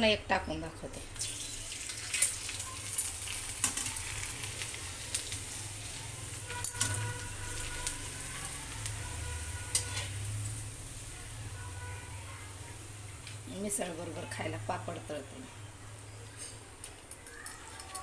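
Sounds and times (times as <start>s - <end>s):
papad sizzling in hot oil: 0.9s - 18.0s
sharp pops and crackles: 1.2s - 8.0s, 16.2s - 18.0s.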